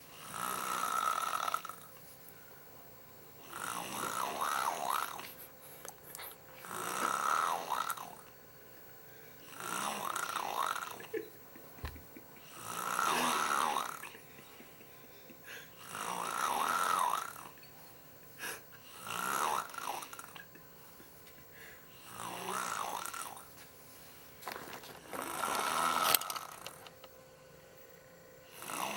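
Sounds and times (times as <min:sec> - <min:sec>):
girl snoring loudly: 0:00.2 - 0:01.8, 0:03.4 - 0:05.3, 0:06.6 - 0:08.2, 0:09.5 - 0:11.1, 0:12.5 - 0:14.1, 0:15.8 - 0:17.5, 0:18.4 - 0:20.4, 0:22.0 - 0:23.5, 0:25.0 - 0:26.8, 0:28.5 - 0:28.9.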